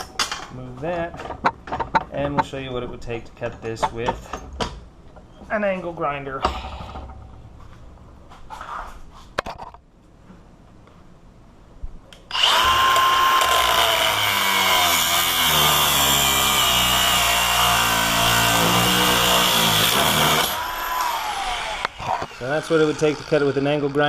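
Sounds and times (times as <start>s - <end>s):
angle grinder cutting metal: 12.3s - 24.0s.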